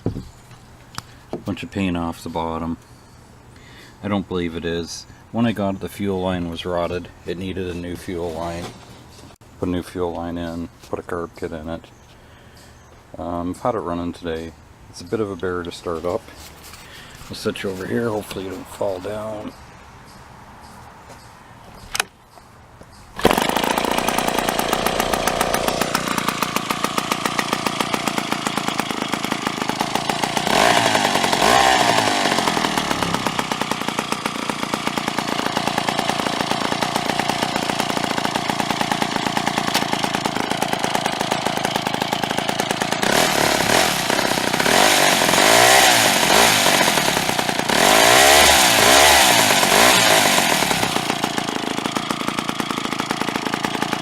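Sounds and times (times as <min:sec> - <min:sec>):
knock: 0:00.0 - 0:00.3
chainsaw engine revving: 0:23.2 - 0:54.0.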